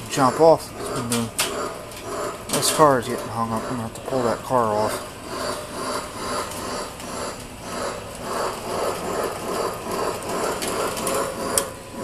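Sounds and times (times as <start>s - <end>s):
model train wheels clattering: 8.2s - 11.7s.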